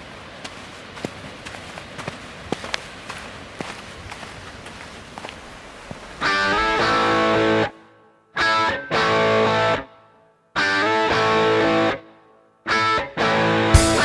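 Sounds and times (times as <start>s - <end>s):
distorted electric guitar riff: 6.2s - 7.7s, 8.4s - 9.9s, 10.6s - 12.0s, 12.7s - 14.0s.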